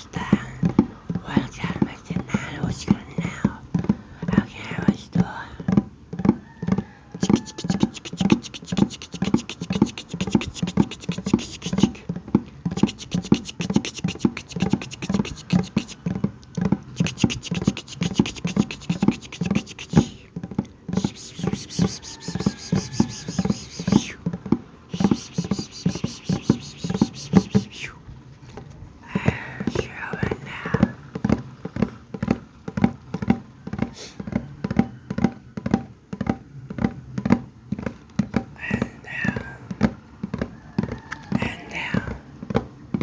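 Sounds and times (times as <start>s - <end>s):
wet mouth pops and clicks: 7.2s - 12.0s, 12.7s - 16.1s, 16.9s - 20.3s, 21.0s - 24.2s, 24.9s - 28.0s.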